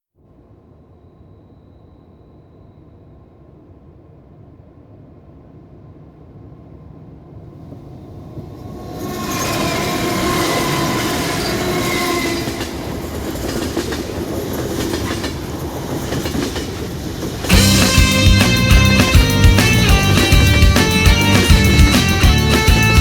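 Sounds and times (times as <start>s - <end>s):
train wheels clicking over joints: 8.8s - 23.0s
music: 17.5s - 23.0s.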